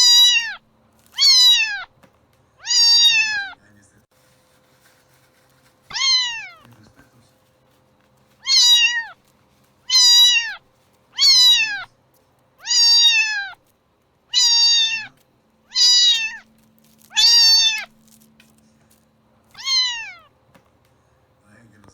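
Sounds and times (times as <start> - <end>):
cat meowing: 0.0 - 1.9, 2.6 - 3.6, 5.9 - 6.7, 8.4 - 9.2, 9.8 - 12.0, 12.6 - 13.6, 14.3 - 18.2, 19.5 - 20.3.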